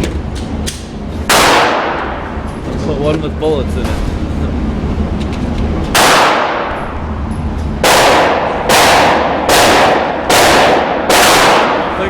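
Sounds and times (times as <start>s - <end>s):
gunshots with ringing tail: 1.3s - 2.2s, 5.9s - 7.0s, 7.8s - 12.0s.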